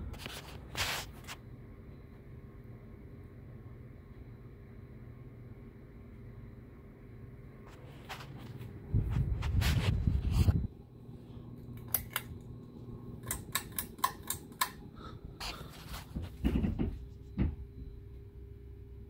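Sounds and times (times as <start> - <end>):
ceiling fan motor humming: 0.0 - 19.0
sharp clicks: 13.2 - 14.8.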